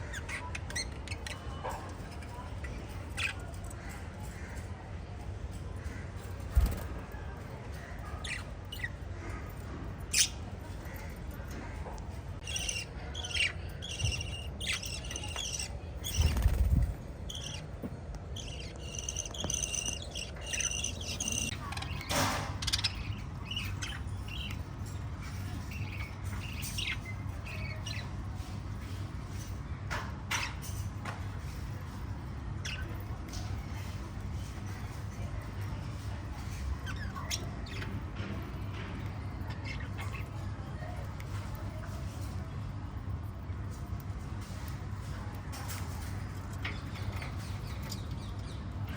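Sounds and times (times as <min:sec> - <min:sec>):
lovebirds chirping: 0:00.0 - 0:04.8, 0:05.8 - 0:29.4.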